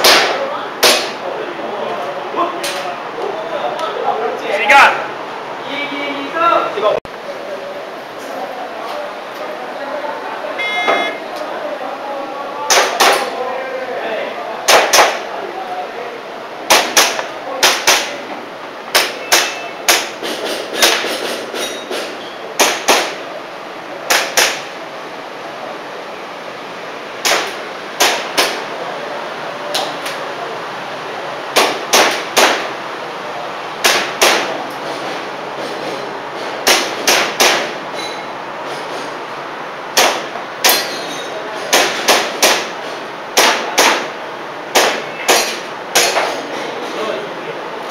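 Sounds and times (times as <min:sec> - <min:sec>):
airsoft pistol shots: 0:27.2 - 0:28.6, 0:40.0 - 0:40.8.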